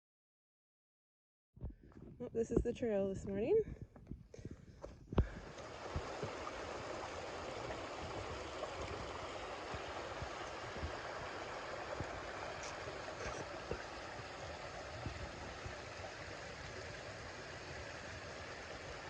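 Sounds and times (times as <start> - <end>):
rainwater rushing down a trail: 5.2 - 19.0.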